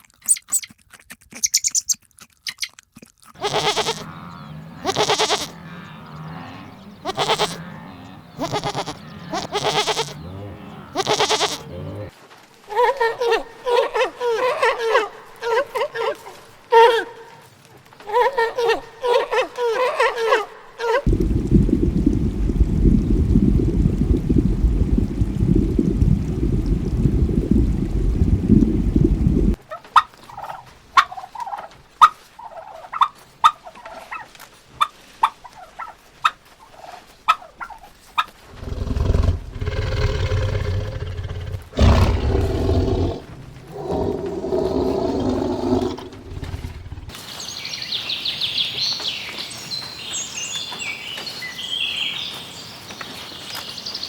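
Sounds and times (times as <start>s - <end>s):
sharp repeated clicking calls: 0.2s - 4.1s
high bird chirping: 1.4s - 2.0s
long pitched animal calls: 3.4s - 12.1s, 38.6s - 47.1s.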